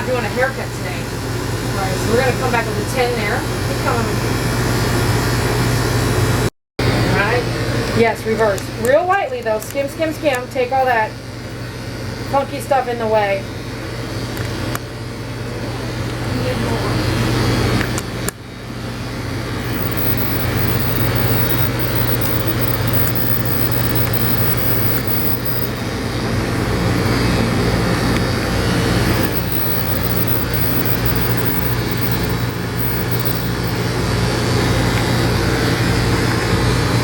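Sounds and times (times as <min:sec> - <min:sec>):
electric clippers humming: 0:28.7 - 0:33.9.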